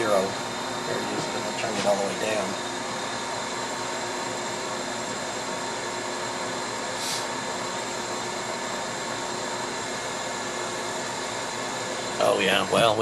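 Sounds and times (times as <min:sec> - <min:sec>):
faint steady whine: 0:00.0 - 0:13.0
fan whooshing: 0:00.0 - 0:13.0.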